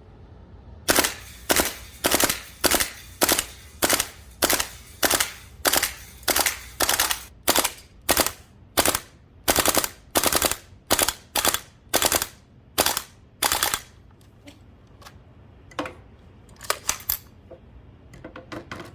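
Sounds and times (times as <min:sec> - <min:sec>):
airsoft rifle shots: 0:00.9 - 0:14.0.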